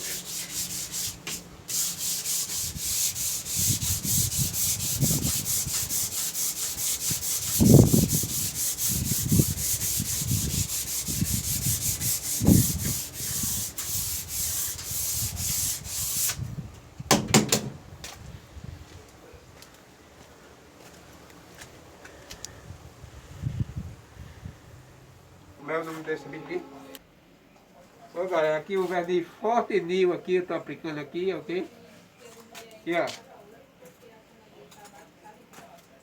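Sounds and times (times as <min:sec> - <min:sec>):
sandpaper strokes on wood: 0:00.0 - 0:16.4.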